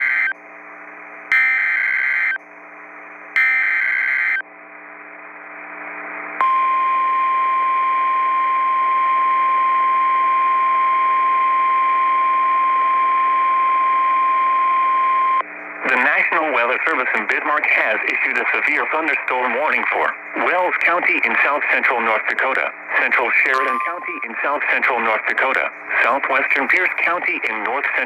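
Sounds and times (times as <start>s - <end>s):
steady warning alarm tone: 0.0s - 0.4s, 1.3s - 2.4s, 3.3s - 4.4s
screechy digital data bursts: 1.4s - 2.4s
radio hiss: 15.4s - 28.0s.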